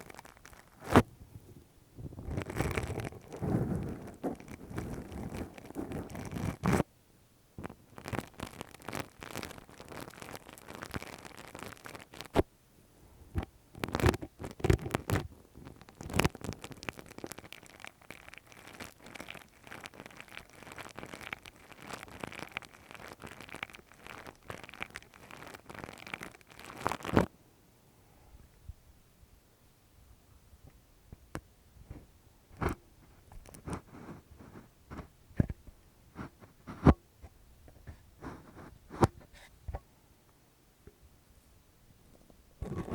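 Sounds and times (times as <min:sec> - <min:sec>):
ear-picking scratching and crackling: 0:00.0 - 0:06.9, 0:07.6 - 0:12.5, 0:13.3 - 0:27.3, 0:31.9 - 0:37.0, 0:37.7 - 0:39.8, 0:42.1 - 0:42.9.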